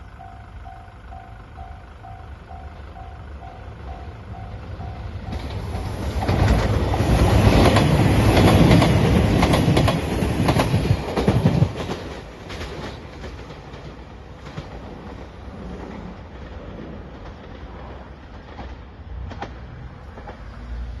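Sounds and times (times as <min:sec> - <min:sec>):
level crossing warning bell: 0:00.0 - 0:05.6
train passing: 0:00.0 - 0:21.0
wheels clacking over rail joints: 0:00.2 - 0:20.9.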